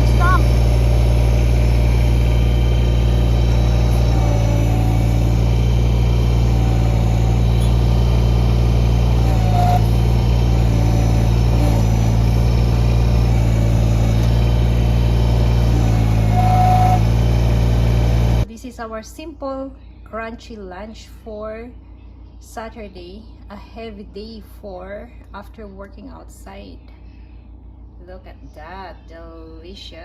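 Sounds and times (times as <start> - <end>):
tractor diesel engine running: 0.0 - 18.5.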